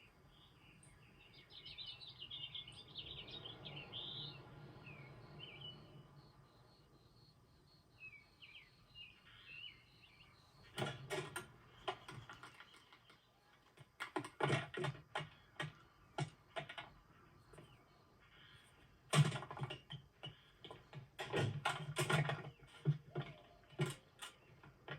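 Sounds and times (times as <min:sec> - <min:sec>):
small hard objects clattering: 0:10.8 - 0:17.0.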